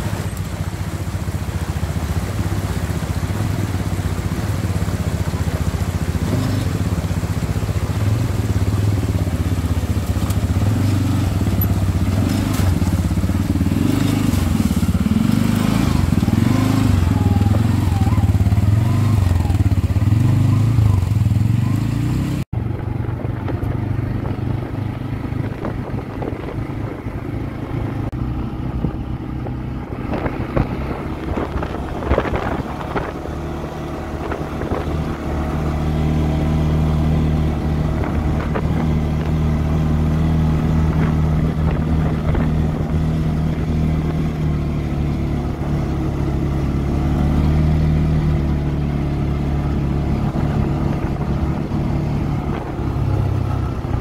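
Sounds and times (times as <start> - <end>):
quad bike engine running: 0.0 - 54.0.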